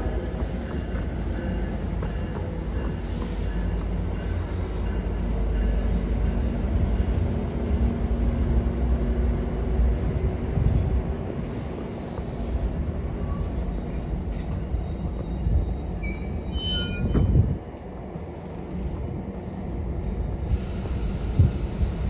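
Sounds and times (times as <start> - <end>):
train rumbling on rails: 0.0 - 22.0
high wheel squeals: 11.5 - 17.2.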